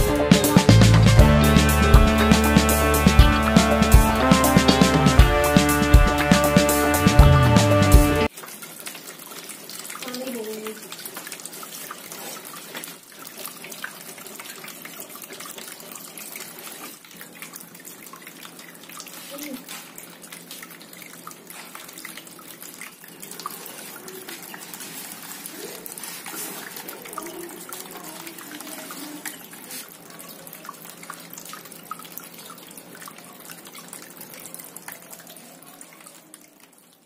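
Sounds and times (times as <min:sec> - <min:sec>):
running water: 0:00.0 - 0:37.0
water drips and splashes: 0:08.2 - 0:37.0.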